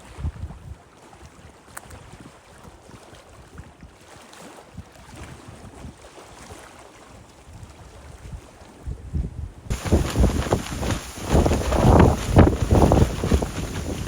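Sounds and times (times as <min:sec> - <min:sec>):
wind buffeting microphone: 0:00.0 - 0:00.8, 0:07.5 - 0:14.0
outdoor hiss: 0:09.7 - 0:14.0.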